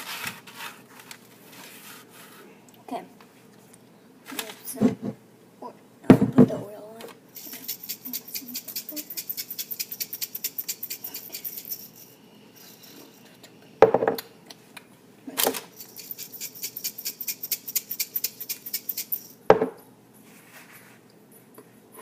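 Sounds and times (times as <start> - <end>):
loud knocks of kitchenware: 19.5 - 19.8.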